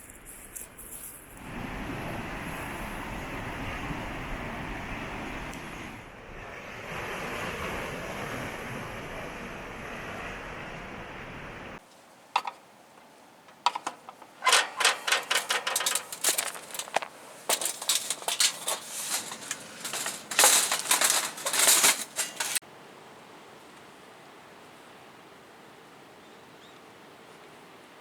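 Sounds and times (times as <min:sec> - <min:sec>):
rapid clicking and rattling: 0:13.5 - 0:22.6.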